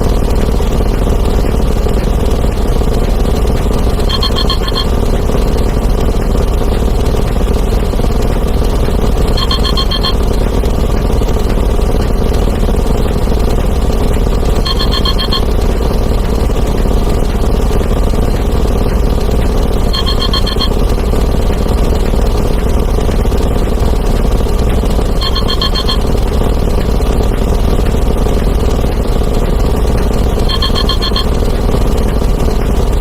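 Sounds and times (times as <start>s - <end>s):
din of overlapping sound effects: 0.0s - 33.0s
alarm clock beeps: 4.0s - 5.1s, 9.3s - 10.5s, 14.5s - 15.8s, 19.8s - 20.9s, 25.0s - 26.2s, 30.2s - 31.6s.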